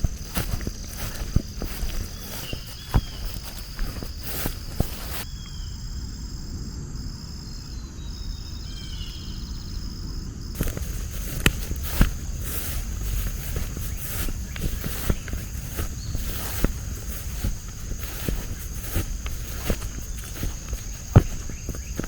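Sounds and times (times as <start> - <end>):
footsteps on outdoor ground: 0.0 - 5.3, 10.5 - 22.0
high insect buzz: 0.0 - 22.0.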